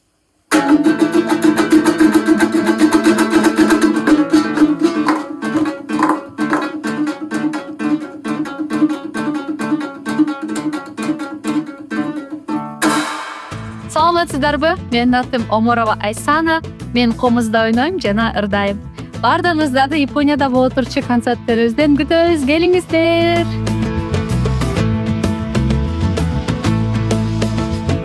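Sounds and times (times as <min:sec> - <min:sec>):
lute strummed: 0:00.5 - 0:16.5, 0:22.7 - 0:28.0.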